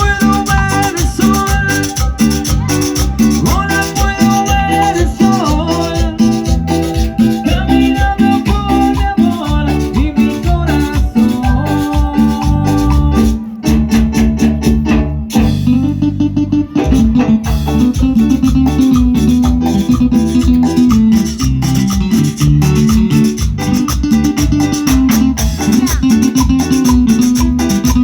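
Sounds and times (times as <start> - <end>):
shaker percussion: 0.0 - 15.8, 16.8 - 28.0
plucked guitar melody: 0.0 - 28.0
steady bass: 0.0 - 28.0.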